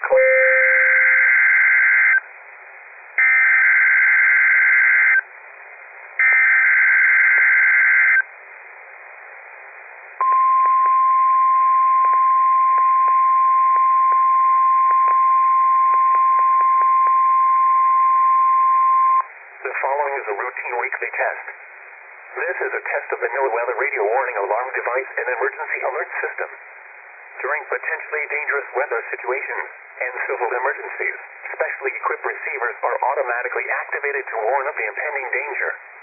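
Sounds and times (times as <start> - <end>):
steady warning alarm tone: 0.1 - 2.2
faint static clicks: 4.5 - 11.1, 13.7 - 17.2, 19.2 - 36.0.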